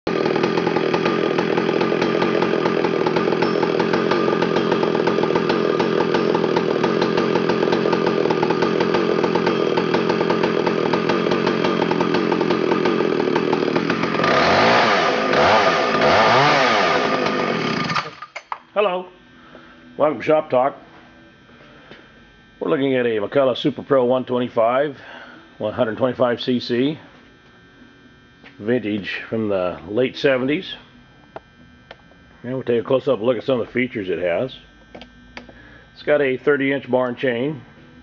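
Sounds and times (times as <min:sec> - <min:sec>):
chainsaw engine running and revving: 0:00.1 - 0:18.3.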